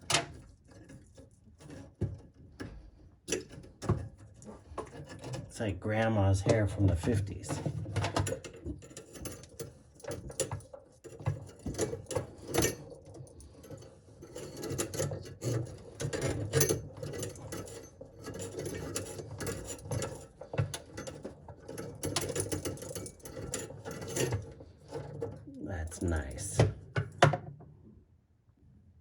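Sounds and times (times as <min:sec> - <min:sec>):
drain auger cable rattling: 0:14.4 - 0:25.4.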